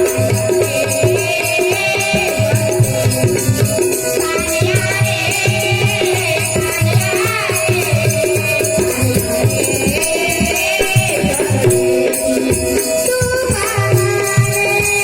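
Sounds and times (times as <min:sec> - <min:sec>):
children singing devotional song: 0:00.0 - 0:11.7
harmonium: 0:00.0 - 0:15.0
jingling hand percussion: 0:00.0 - 0:15.0.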